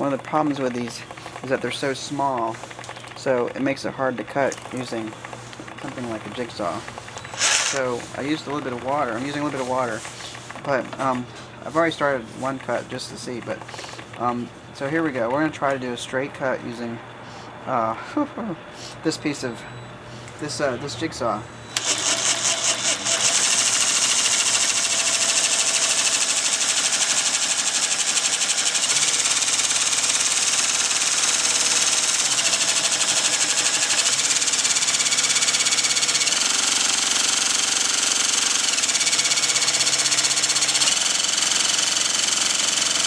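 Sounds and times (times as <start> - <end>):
jigsaw cutting ceramic tile: 7.3 - 8.0, 21.8 - 43.0.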